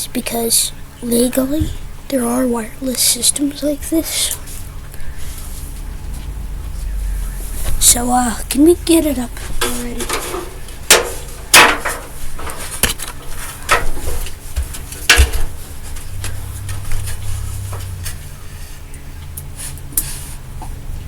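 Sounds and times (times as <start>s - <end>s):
low hum: 0.0s - 19.4s
hard objects knocking and clattering: 9.4s - 18.0s.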